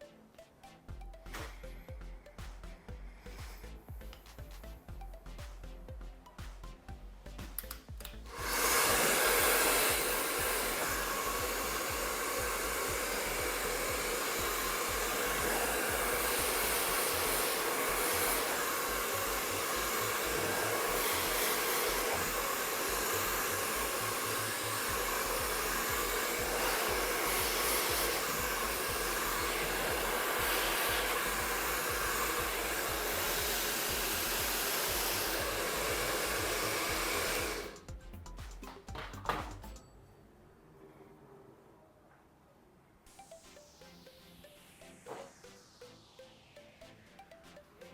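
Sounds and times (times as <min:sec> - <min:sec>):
hair dryer running: 0:07.6 - 0:37.9.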